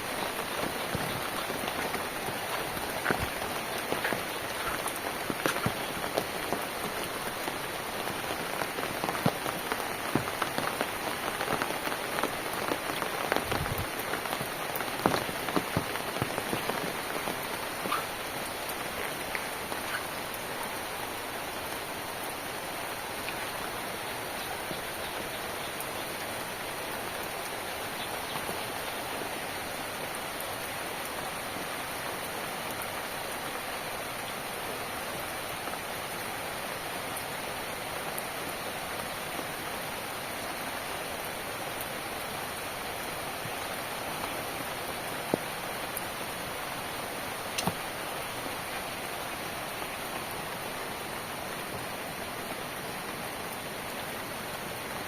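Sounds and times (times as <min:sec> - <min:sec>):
raindrops tapping sharply: 0:00.0 - 0:20.2, 0:47.5 - 0:47.9
steady rain falling: 0:00.0 - 0:55.0.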